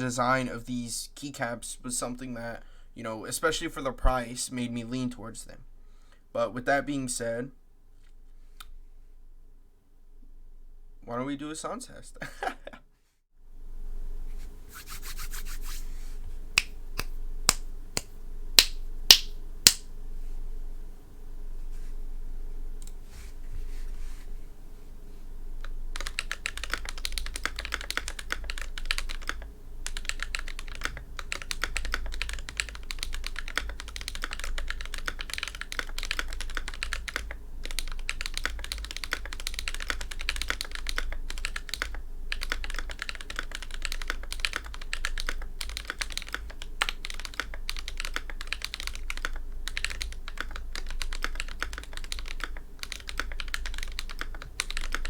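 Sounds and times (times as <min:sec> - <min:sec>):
mechanical keyboard typing: 0:26.0 - 0:55.0.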